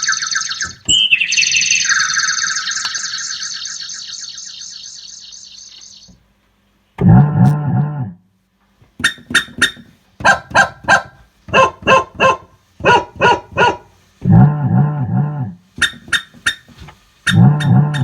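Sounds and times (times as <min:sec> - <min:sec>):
dog barking: 0:10.2 - 0:13.9.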